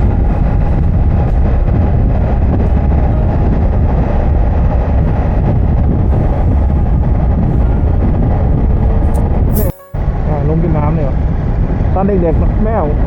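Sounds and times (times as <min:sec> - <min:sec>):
wind rushing on microphone: 0:00.0 - 0:09.5.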